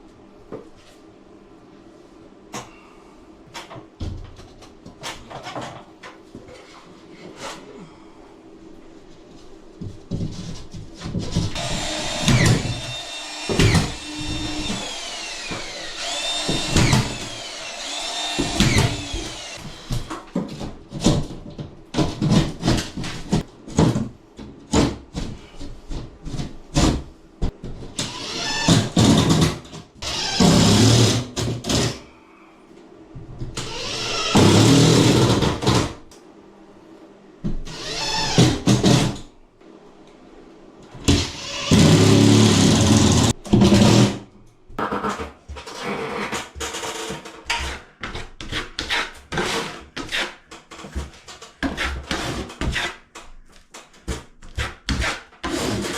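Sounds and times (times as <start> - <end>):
power drill whining: 11.6 - 20.1, 28.0 - 29.2, 30.0 - 31.1, 33.6 - 35.2, 37.7 - 38.6, 41.1 - 44.0.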